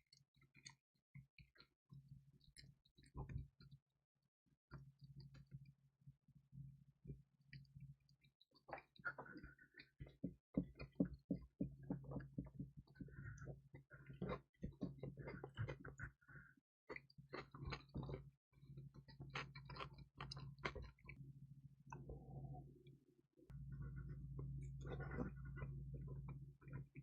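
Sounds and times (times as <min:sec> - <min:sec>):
crunchy wet chewing: 0:08.6 - 0:18.3, 0:18.9 - 0:21.2, 0:23.7 - 0:27.0
low steady hum: 0:17.6 - 0:27.0.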